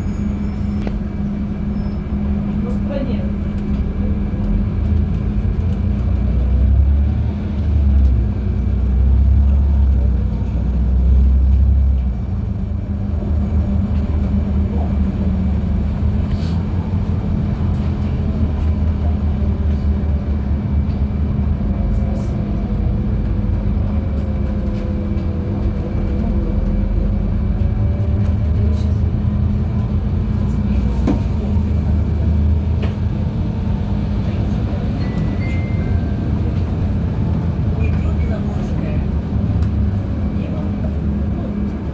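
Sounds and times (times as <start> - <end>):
bus engine and road rumble: 0.0 - 41.9.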